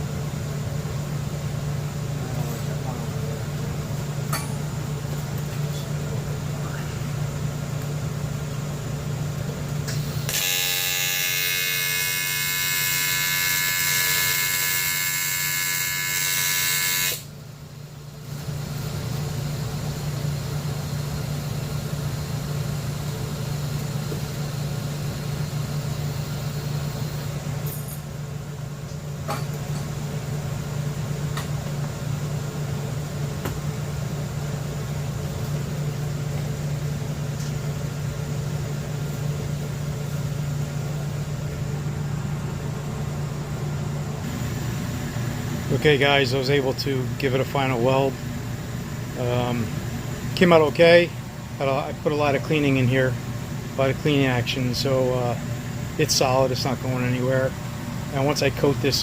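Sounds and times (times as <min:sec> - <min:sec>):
steady machine hum: 0:00.0 - 0:59.0
welding arc buzzing: 0:09.9 - 0:17.4.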